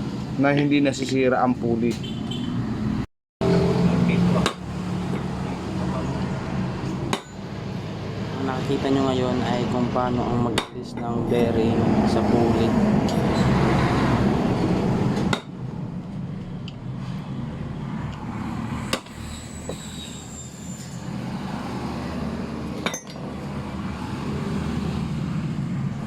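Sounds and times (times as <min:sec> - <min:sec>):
hammer striking metal: 0:03.4 - 0:05.6, 0:06.8 - 0:07.6, 0:10.4 - 0:11.6, 0:15.1 - 0:15.7, 0:18.8 - 0:19.9, 0:22.8 - 0:23.3.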